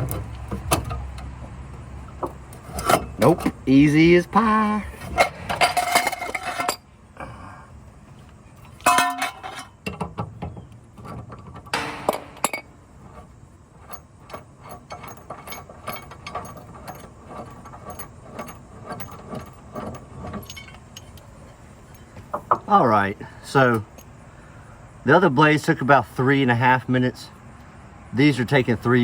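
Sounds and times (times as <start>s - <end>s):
metal clanking on metal: 0.0s - 3.6s, 5.0s - 6.8s, 8.6s - 22.7s.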